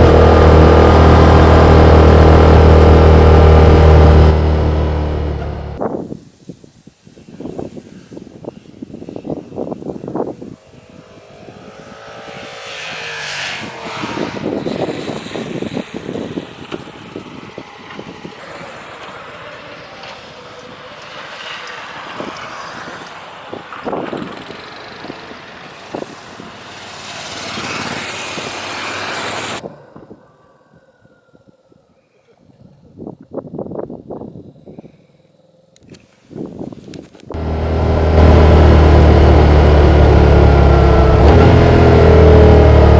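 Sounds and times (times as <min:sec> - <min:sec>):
motorcycle engine accelerating: 0:00.0 - 0:05.8, 0:09.9 - 0:20.4, 0:22.0 - 0:29.6, 0:37.2 - 0:42.9
wind rushing on microphone: 0:05.8 - 0:20.9, 0:21.9 - 0:31.7, 0:32.5 - 0:35.0, 0:35.8 - 0:42.8.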